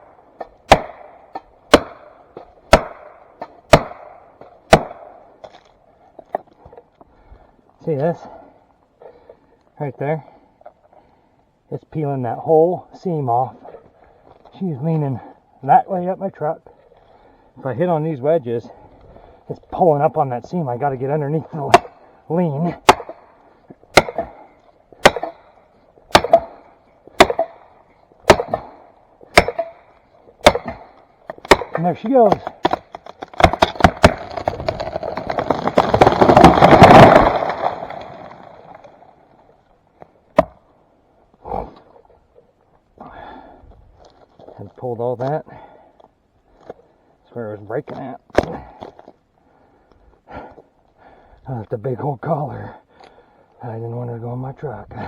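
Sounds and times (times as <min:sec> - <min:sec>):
wedges struck with heavy blows: 0:00.7 - 0:01.0, 0:02.7 - 0:03.1, 0:03.7 - 0:04.1, 0:26.1 - 0:26.5, 0:28.3 - 0:29.7, 0:30.4 - 0:30.9
hammer blows on felling wedge: 0:28.2 - 0:29.8, 0:30.4 - 0:38.4.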